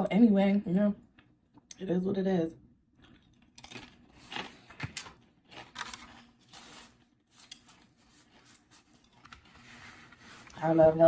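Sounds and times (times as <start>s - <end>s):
person chewing: 2.9s - 9.6s
crinkly rustles: 3.7s - 11.0s.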